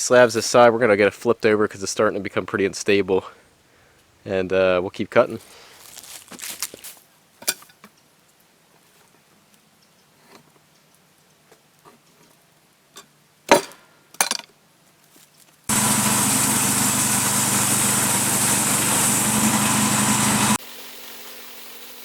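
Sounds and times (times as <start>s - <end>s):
sharp knocks: 13.5s - 13.8s
sawmill cutting log: 15.7s - 20.6s
engine running: 15.7s - 22.0s.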